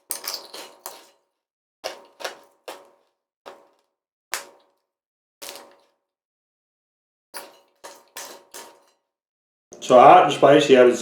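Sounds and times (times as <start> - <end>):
pork rinds crackling: 0.0 - 1.2, 1.8 - 3.8, 5.4 - 5.9.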